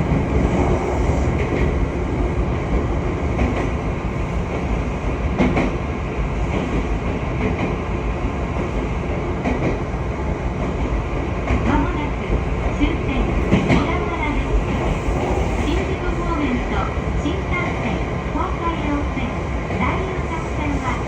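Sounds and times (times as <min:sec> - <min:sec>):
train wheels rumbling on rails: 0:00.0 - 0:21.0
faint rail clacks: 0:02.7 - 0:05.8.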